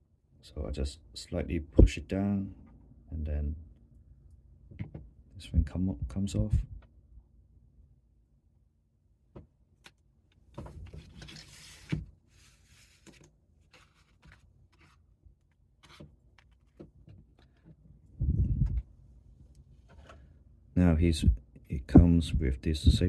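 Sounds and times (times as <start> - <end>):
rustling scrape: 10.7 - 15.1.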